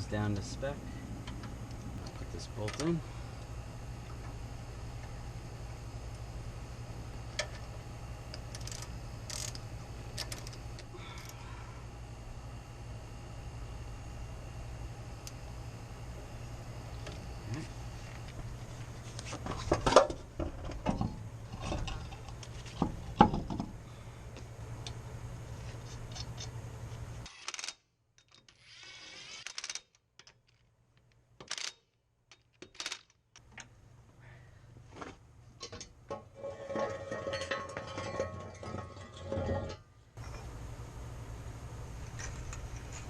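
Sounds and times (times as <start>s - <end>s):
metal tools clanking: 35.6s - 40.4s.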